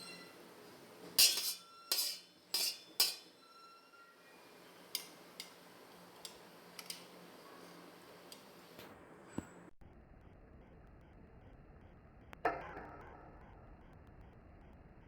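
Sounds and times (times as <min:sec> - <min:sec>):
metal utensils clinking: 0:01.2 - 0:03.4, 0:04.9 - 0:05.6, 0:06.2 - 0:07.2.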